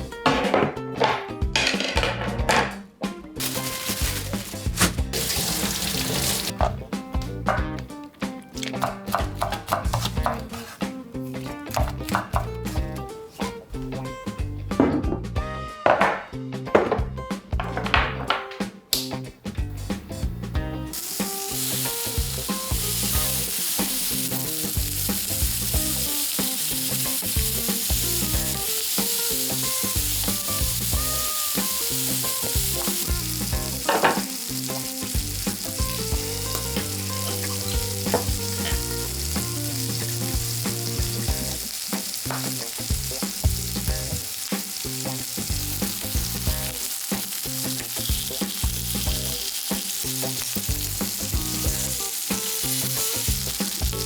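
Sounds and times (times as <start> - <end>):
meat sizzling on a grill pan: 3.4 - 6.6, 20.9 - 54.0.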